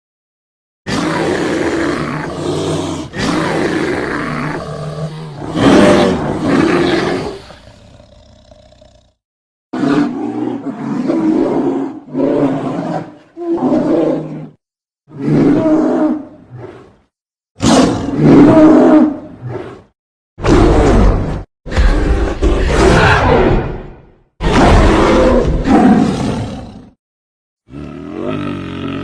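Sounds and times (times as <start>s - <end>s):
animal roars: 0.9s - 9.2s, 9.8s - 27.0s, 27.7s - 29.0s.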